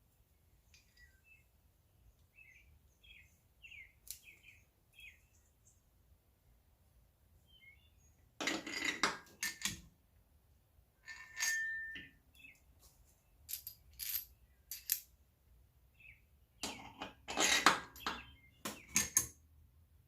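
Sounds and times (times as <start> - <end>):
metal tools clinking: 8.4 - 9.8, 11.1 - 12.5, 13.4 - 15.1
short metallic ring: 11.1 - 12.2.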